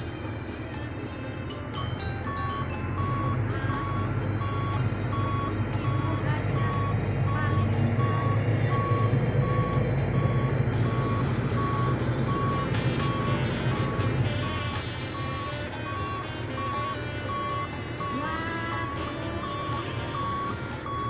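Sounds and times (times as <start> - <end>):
excavator engine rumbling: 0.0 - 21.0
travel alarm beeping: 0.9 - 21.0.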